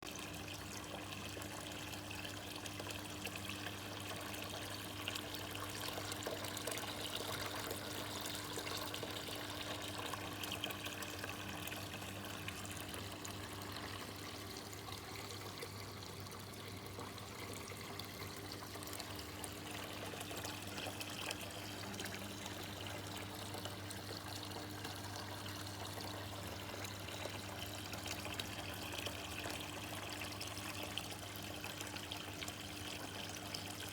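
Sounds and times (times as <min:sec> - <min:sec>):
fountain water trickling: 0:00.1 - 0:33.9.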